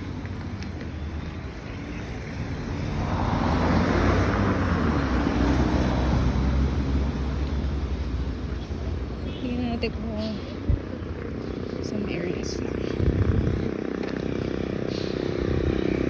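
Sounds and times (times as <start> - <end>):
vehicle driving past: 2.4 - 9.1
steady low rumble: 9.4 - 15.7.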